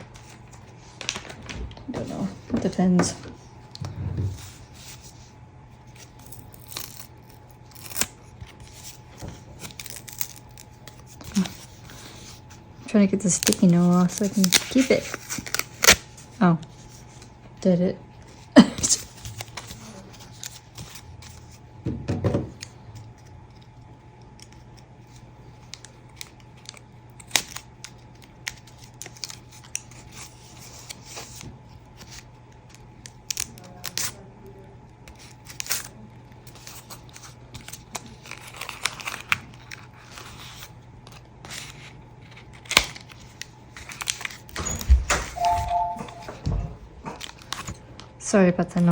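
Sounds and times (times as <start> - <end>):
paper crinkling and tearing: 0.1 - 1.8, 4.4 - 12.6, 13.2 - 17.3, 18.4 - 21.6, 23.2 - 34.2, 35.0 - 44.6.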